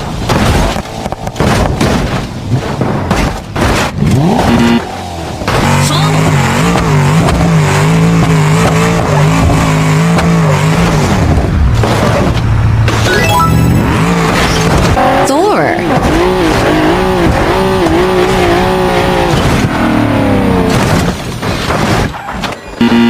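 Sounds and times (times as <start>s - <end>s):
crashing knocks and impacts: 0.0s - 4.5s, 14.1s - 15.2s, 15.8s - 22.6s
car engine with wavering pitch: 4.0s - 12.2s.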